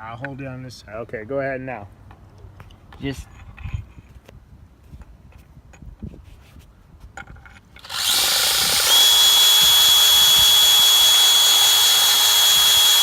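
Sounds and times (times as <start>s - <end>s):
hammer drill whining: 7.8s - 13.0s.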